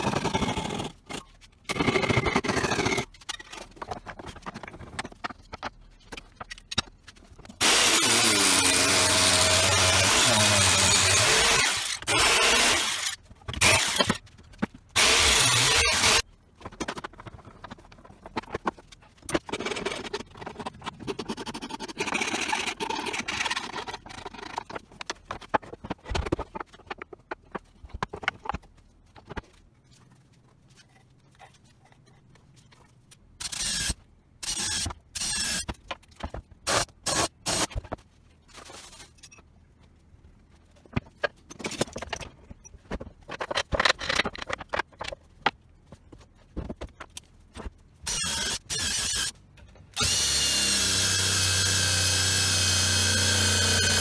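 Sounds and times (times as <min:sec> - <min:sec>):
tool scraping and grinding: 0:00.0 - 0:28.6, 0:32.8 - 0:38.0, 0:50.0 - 0:54.0.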